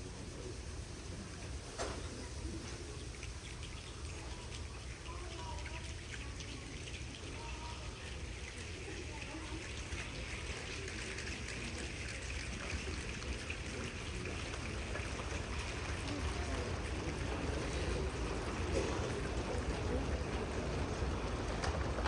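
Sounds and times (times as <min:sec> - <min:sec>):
crowd imitating rain: 0:14.5 - 0:22.0.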